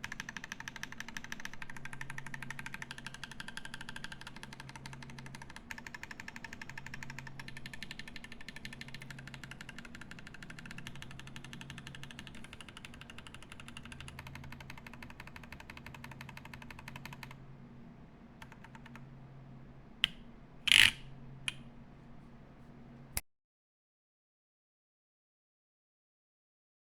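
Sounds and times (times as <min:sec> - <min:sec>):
mechanical keyboard typing: 0:00.0 - 0:17.4, 0:18.4 - 0:19.0, 0:20.7 - 0:21.0.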